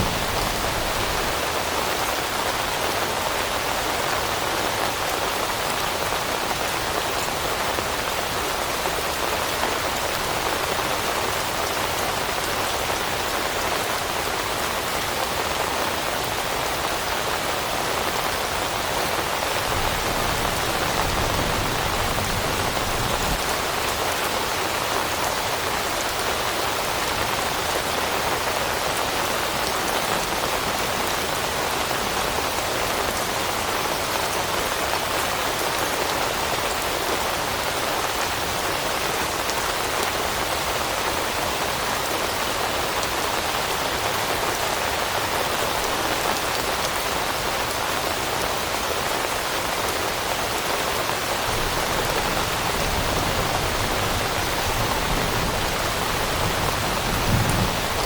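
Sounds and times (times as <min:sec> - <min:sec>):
rain falling on leaves: 0:00.0 - 0:58.0.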